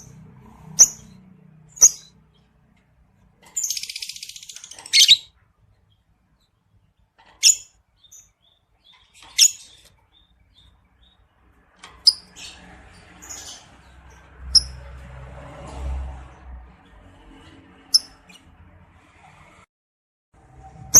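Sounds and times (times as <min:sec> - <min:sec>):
lovebird chirping: 0:00.7 - 0:02.6, 0:03.5 - 0:11.3, 0:12.0 - 0:12.6, 0:13.2 - 0:14.8.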